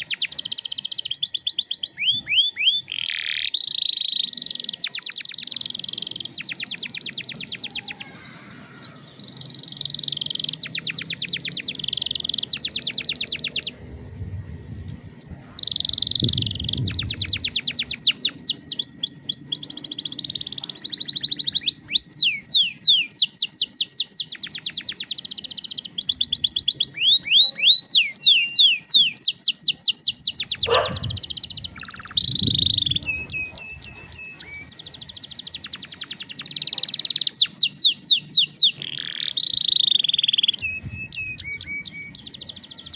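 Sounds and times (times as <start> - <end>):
canary singing trills: 0.0 - 13.8, 15.2 - 42.9.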